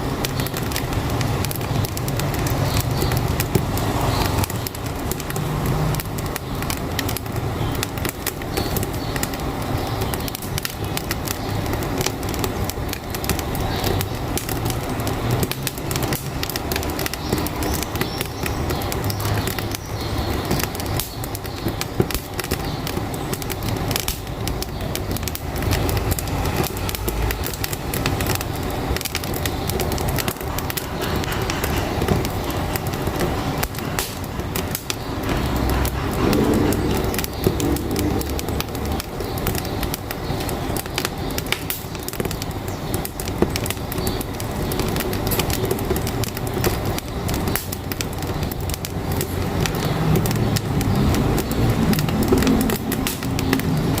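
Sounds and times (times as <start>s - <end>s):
truck engine rumbling: 0.0s - 54.0s
wood fire crackling: 0.0s - 54.0s.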